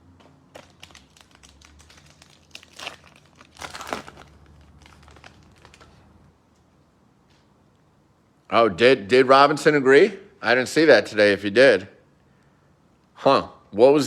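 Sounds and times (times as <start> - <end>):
wrappers crinkling and rustling: 0.2 - 6.3.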